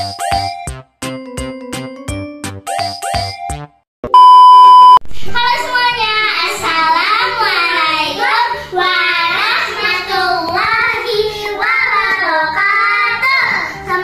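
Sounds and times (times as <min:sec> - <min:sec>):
child singing: 0:05.7 - 0:14.0
light background music: 0:06.5 - 0:14.0.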